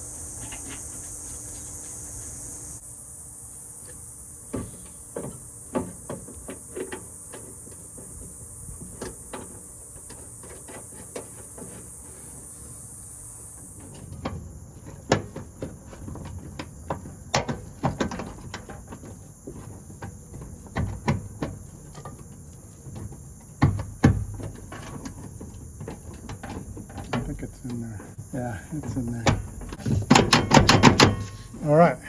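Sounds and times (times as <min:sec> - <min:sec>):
steady high hiss: 0:00.0 - 0:32.0
metallic clicks and knocks: 0:28.8 - 0:31.5.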